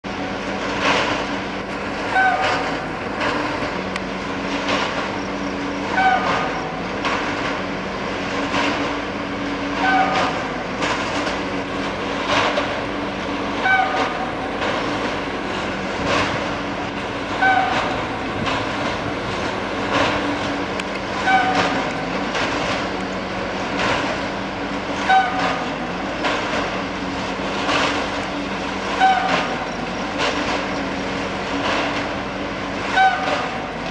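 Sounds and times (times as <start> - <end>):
machine engine droning: 0.1 - 30.2
short hooting tone: 1.7 - 3.9, 11.7 - 20.5
machine clanking: 1.7 - 4.0, 11.7 - 20.6.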